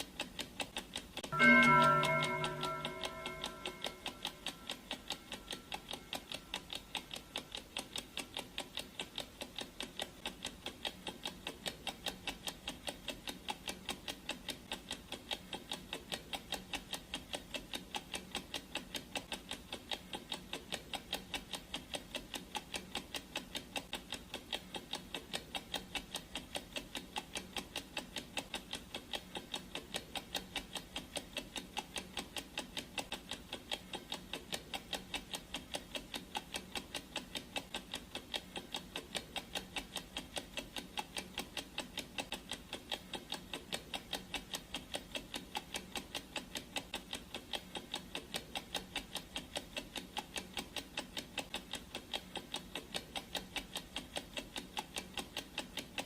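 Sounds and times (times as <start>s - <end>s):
clock ticking quickly: 0.0s - 56.0s.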